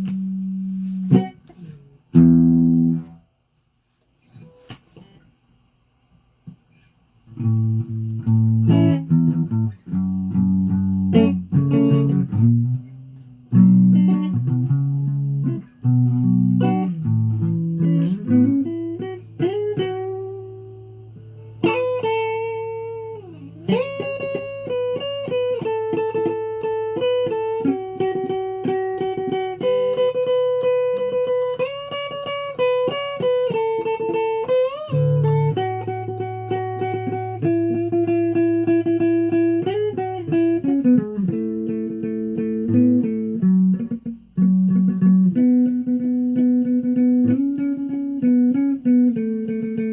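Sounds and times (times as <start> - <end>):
instrumental guitar music: 0.0 - 3.3, 3.9 - 5.3, 6.4 - 49.9.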